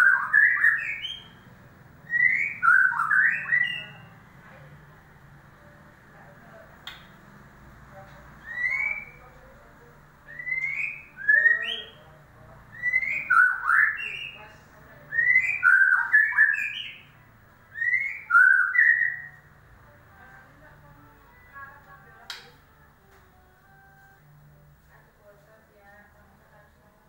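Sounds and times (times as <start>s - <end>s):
bird whistled song: 0.0s - 1.4s, 2.1s - 4.1s, 8.4s - 9.2s, 10.3s - 12.0s, 12.7s - 17.1s, 17.7s - 19.5s.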